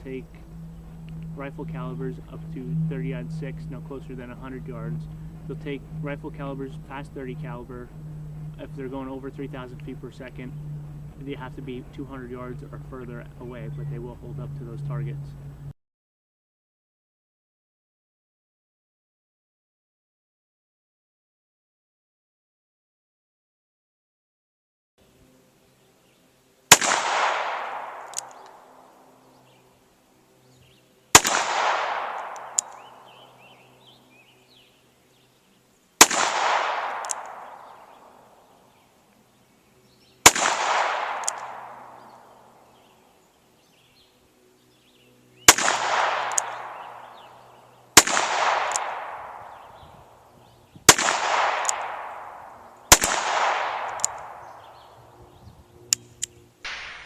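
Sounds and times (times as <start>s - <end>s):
handgun shots with echo: 26.7s - 28.6s, 31.2s - 32.9s, 36.0s - 37.8s, 40.2s - 42.2s, 45.5s - 47.1s, 48.0s - 49.7s, 50.9s - 54.8s, 56.6s - 57.0s
bullets hitting steel targets: 31.2s - 32.9s, 36.0s - 37.5s, 40.3s - 41.9s, 45.5s - 47.0s, 48.0s - 49.6s, 50.9s - 54.4s.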